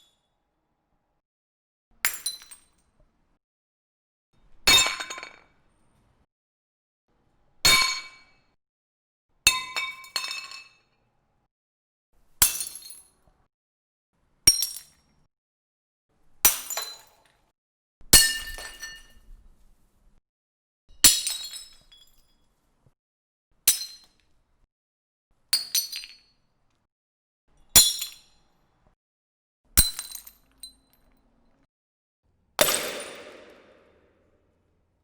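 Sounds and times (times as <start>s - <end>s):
glass breaking: 32.6s - 34.0s.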